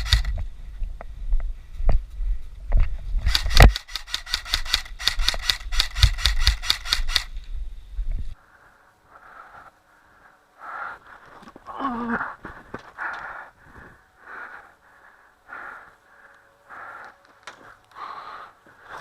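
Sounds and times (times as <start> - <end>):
airsoft gun clicks: 0.0 - 0.4, 3.3 - 7.4
wind rumble on microphone: 0.0 - 3.7, 5.5 - 8.4.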